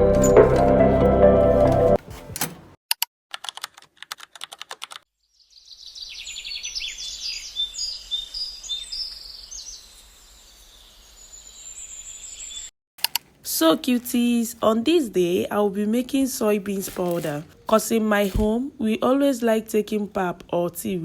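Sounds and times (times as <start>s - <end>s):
quick clicks: 2.4s - 5.0s, 13.0s - 13.3s
small birds chirping: 5.3s - 12.7s.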